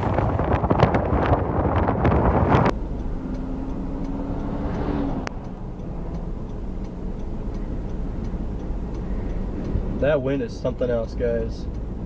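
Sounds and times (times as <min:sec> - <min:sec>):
wind buffeting microphone: 0:00.0 - 0:02.7
low rumble: 0:00.0 - 0:03.1.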